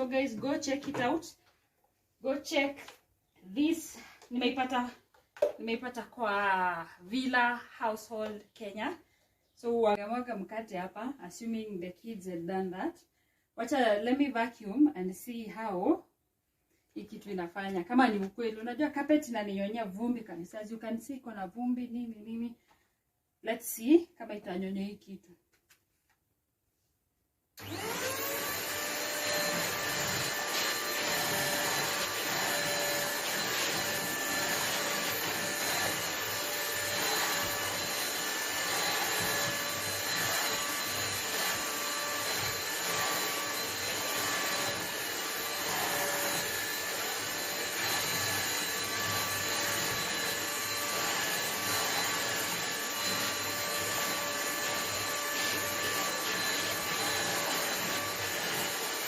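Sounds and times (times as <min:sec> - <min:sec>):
vacuum cleaner running: 0:27.6 - 0:59.0.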